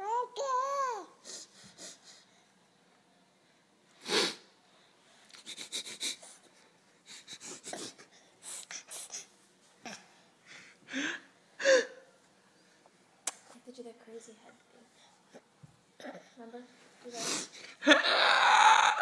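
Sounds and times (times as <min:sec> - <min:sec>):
baby sniffling: 0:17.2 - 0:17.7.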